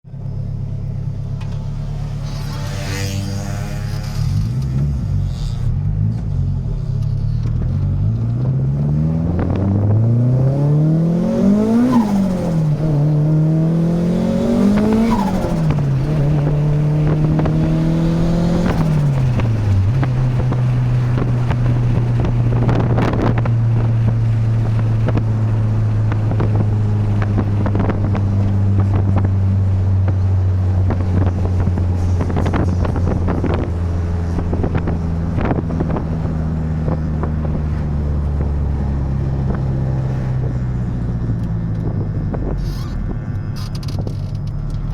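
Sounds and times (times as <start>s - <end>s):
car engine revving: 0.0s - 44.9s
turbo flutter: 2.0s - 5.8s, 41.7s - 44.9s.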